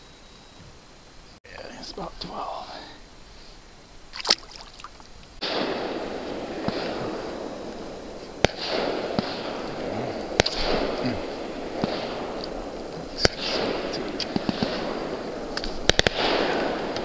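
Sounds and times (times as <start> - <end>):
steady hiss: 0.0 - 17.0
firework bangs: 5.4 - 17.0.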